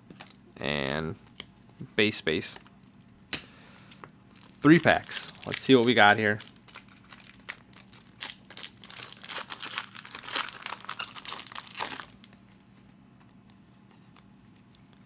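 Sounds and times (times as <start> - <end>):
wrapper tearing and crinkling: 4.3 - 12.4.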